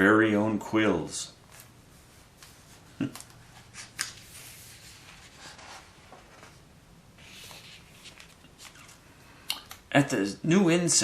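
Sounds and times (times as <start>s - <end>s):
faint soft rustle: 1.5s - 9.1s.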